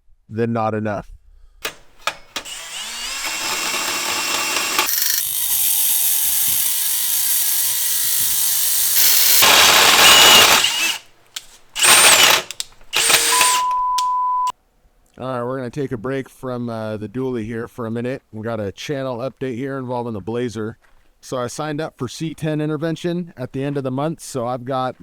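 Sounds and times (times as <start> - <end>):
power tool cutting steel tube: 1.6 - 14.1
steady beep tone: 13.1 - 14.5.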